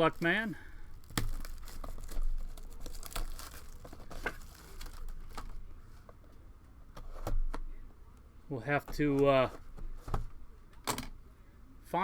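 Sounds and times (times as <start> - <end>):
plastic and foil wrappers crinkling: 0.0 - 5.7.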